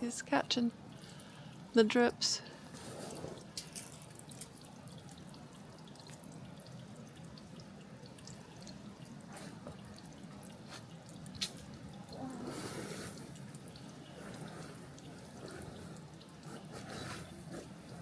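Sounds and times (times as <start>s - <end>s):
water dripping from ice: 0.0s - 18.0s.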